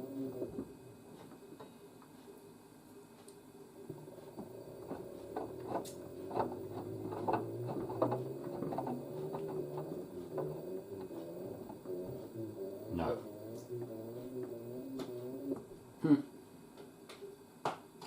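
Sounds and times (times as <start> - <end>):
washing machine motor hum: 0.0 - 18.0
tumbling load knocking: 3.9 - 15.7.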